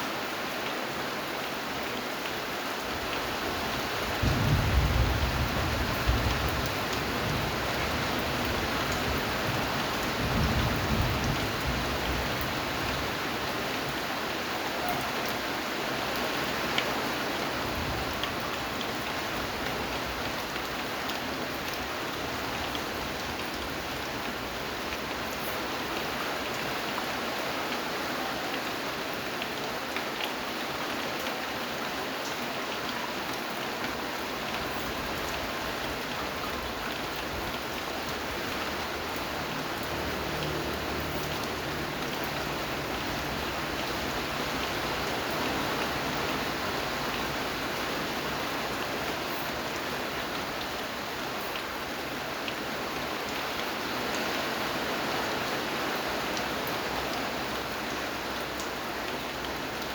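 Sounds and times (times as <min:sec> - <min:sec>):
rain pattering on surfaces: 0:00.0 - 0:59.9.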